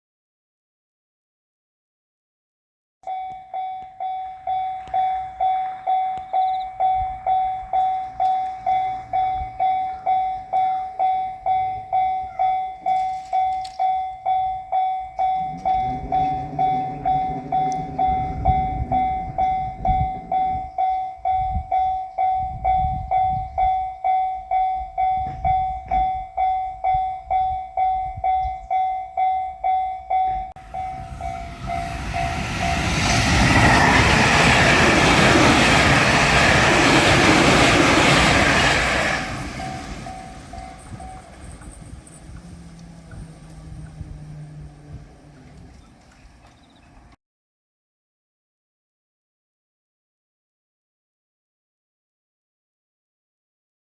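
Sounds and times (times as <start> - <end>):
level crossing bell ringing: 3.1 - 33.0, 38.2 - 47.2
approaching train rushing: 4.1 - 13.6, 14.3 - 21.4, 30.1 - 47.2
low rumble: 15.3 - 20.8.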